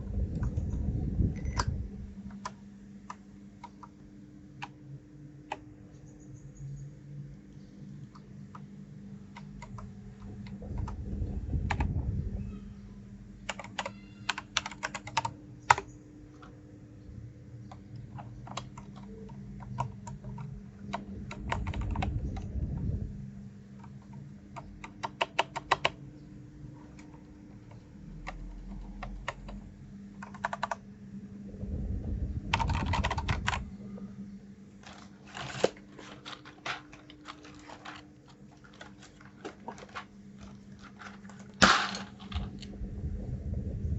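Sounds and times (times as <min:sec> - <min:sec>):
low rumble: 0:00.0 - 0:02.3, 0:09.7 - 0:13.4, 0:20.6 - 0:23.6, 0:28.1 - 0:34.8, 0:42.0 - 0:43.9
faint steady hum: 0:00.0 - 0:43.9
mechanical keyboard typing: 0:09.3 - 0:11.0, 0:13.4 - 0:16.5, 0:17.7 - 0:22.5, 0:23.8 - 0:26.0, 0:27.7 - 0:29.6, 0:30.2 - 0:30.8, 0:32.5 - 0:33.6.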